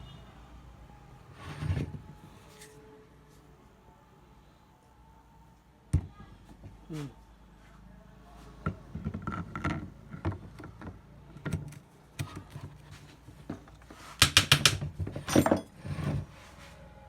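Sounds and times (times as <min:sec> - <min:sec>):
metal tools clinking: 0:15.2 - 0:15.7.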